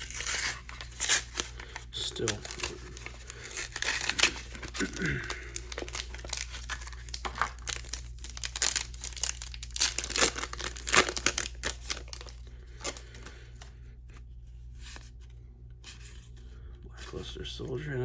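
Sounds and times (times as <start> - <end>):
foil wrapper tearing and crinkling: 0.0 - 13.4.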